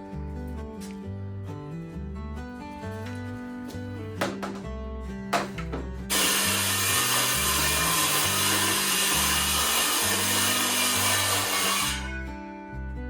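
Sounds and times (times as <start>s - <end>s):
power saw cutting wood: 6.1s - 12.3s.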